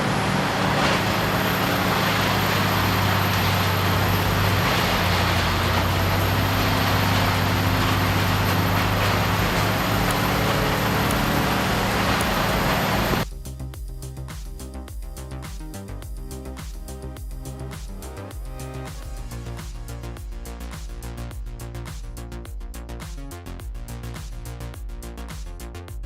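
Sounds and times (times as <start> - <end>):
dense rush of noise: 0.0 - 13.2
diesel engine drone: 0.0 - 13.2.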